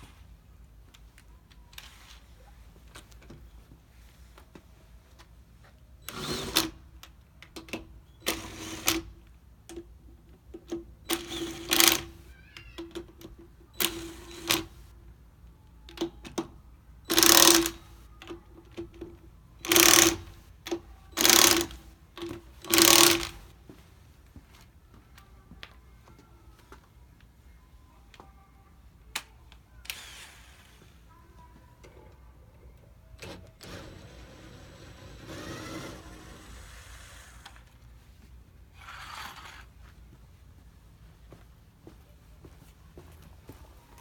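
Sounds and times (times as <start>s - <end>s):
impact wrench bursts: 11.0s - 12.2s, 17.1s - 17.9s, 19.6s - 20.4s, 21.2s - 21.8s, 22.6s - 23.4s, 29.9s - 30.9s.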